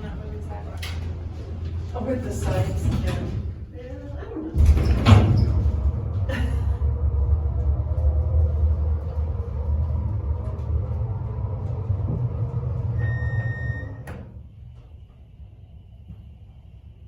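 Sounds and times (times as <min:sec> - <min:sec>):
elevator car clunk: 0:00.0 - 0:03.7, 0:04.5 - 0:15.1
elevator rumbling: 0:00.0 - 0:17.0
faint high whine: 0:12.4 - 0:14.8
short electronic beep: 0:13.0 - 0:14.0.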